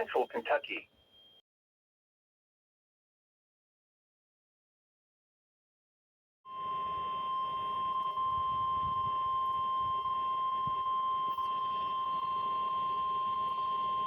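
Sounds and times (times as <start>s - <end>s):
high alarm beep from radio: 0.0s - 1.4s, 6.5s - 14.0s.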